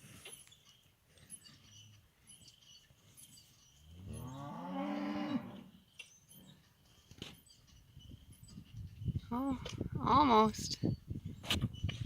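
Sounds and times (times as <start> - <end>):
cow mooing: 4.0 - 5.7.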